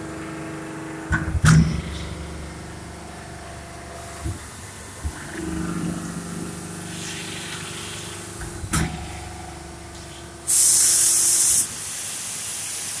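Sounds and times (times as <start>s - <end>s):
machine humming: 0.0s - 12.0s
machine clunk: 8.4s - 10.2s
hissing air: 10.5s - 13.0s.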